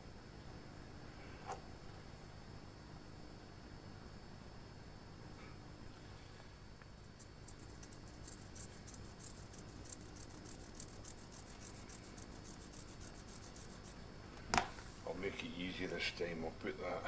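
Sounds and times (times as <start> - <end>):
brush scratching metal rail: 7.2 - 14.0.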